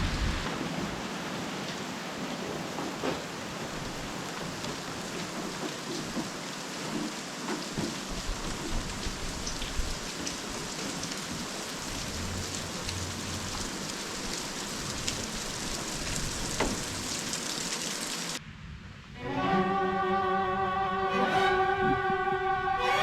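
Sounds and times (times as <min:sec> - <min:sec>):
rain falling: 0:00.0 - 0:18.5
raindrops ticking close by: 0:00.4 - 0:18.4.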